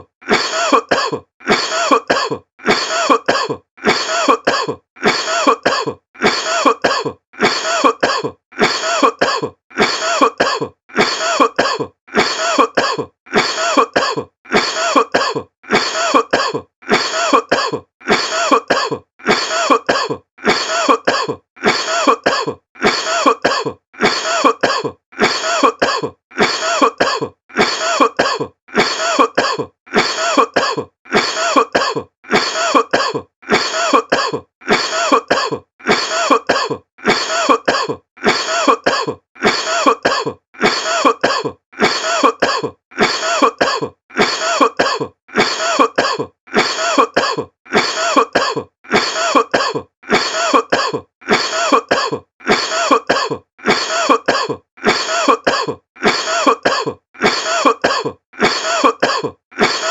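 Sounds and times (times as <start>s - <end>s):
person coughing: 0.0s - 59.9s.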